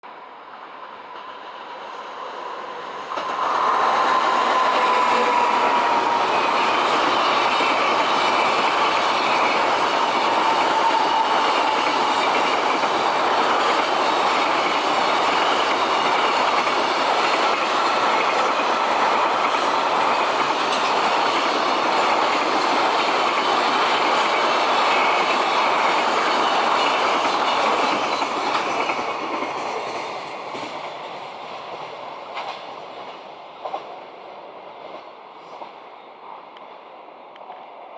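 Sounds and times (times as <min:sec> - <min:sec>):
freight train wagons rolling: 0:03.1 - 0:32.7.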